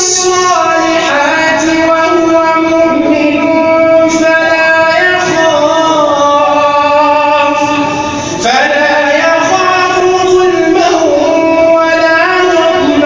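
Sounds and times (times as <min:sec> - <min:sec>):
man chanting melodically: 0:00.0 - 0:13.0.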